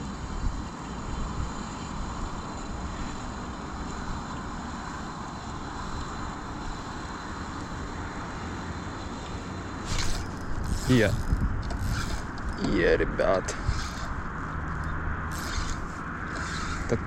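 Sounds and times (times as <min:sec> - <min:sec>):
constant hiss: 0:00.0 - 0:17.0
wind buffeting microphone: 0:09.8 - 0:17.0.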